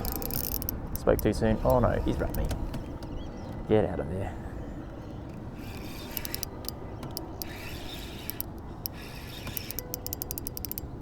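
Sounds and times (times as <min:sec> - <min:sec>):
fishing reel clicking: 0:00.0 - 0:01.8, 0:05.6 - 0:11.0.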